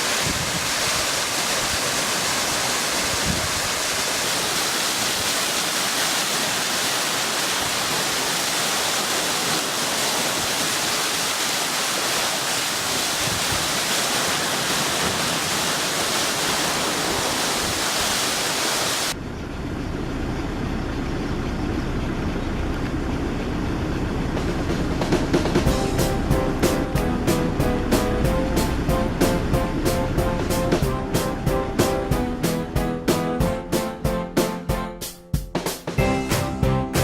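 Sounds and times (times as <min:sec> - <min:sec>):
waterfall rushing: 0:00.0 - 0:19.2, 0:25.5 - 0:32.7
steady low tones: 0:25.5 - 0:34.7.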